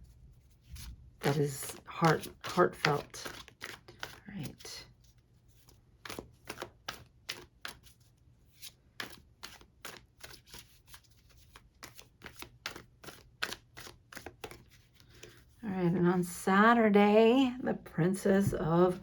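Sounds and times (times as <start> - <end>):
cards being shuffled: 0.4 - 15.6.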